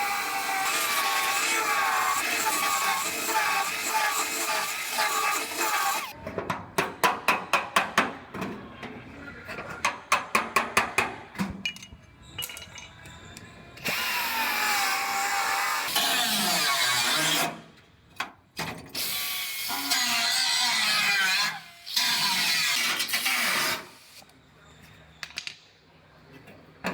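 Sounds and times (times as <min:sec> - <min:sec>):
grinder running: 0:00.0 - 0:06.1.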